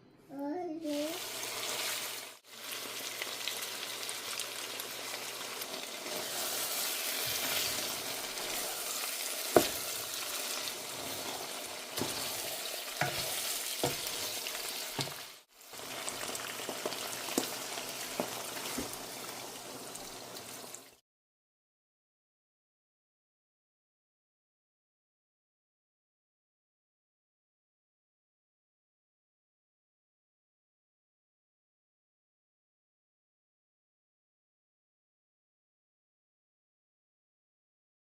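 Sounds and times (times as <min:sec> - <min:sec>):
food sizzling in oil: 0:00.8 - 0:21.0.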